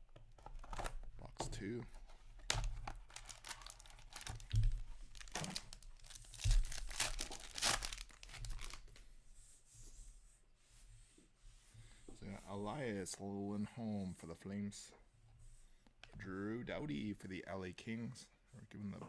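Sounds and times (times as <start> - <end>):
plastic wrapping tearing: 1.9 - 9.0.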